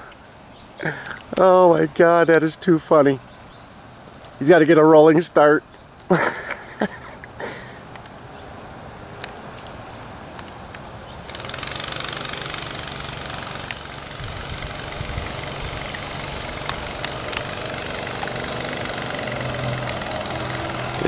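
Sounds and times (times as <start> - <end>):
sharp clicks: 9.2 - 14.0, 14.6 - 21.0
small gas engine running: 11.2 - 21.0.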